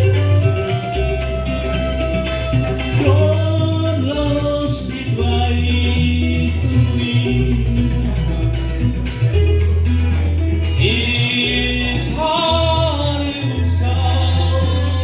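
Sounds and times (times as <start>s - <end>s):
plucked bass line: 0.0s - 15.0s
plucked strings: 0.0s - 15.0s
person singing: 2.8s - 8.2s, 10.6s - 15.0s.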